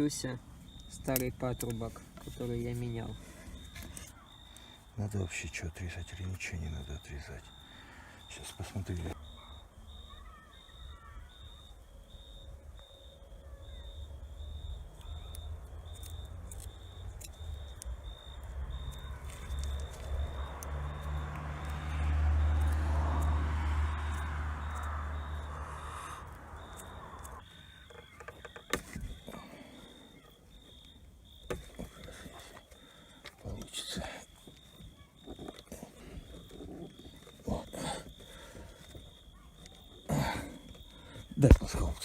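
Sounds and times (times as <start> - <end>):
low vehicle engine rumble: 12.5 - 30.3.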